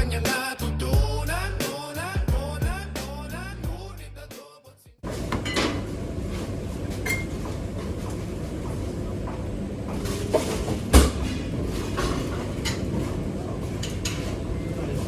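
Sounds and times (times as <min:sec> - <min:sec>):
kitchen rumble: 0:05.0 - 0:15.0
dishes and pans clinking: 0:05.1 - 0:06.0, 0:07.0 - 0:07.4.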